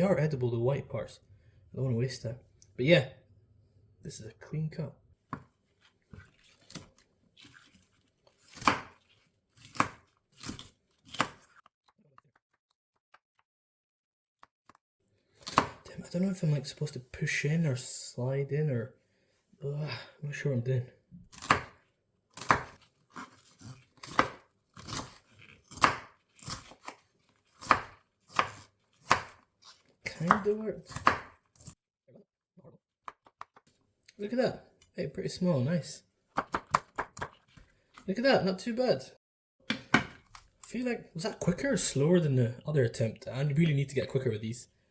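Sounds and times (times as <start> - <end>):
knife cutting on cutting board: 6.1 - 11.6, 22.4 - 31.7.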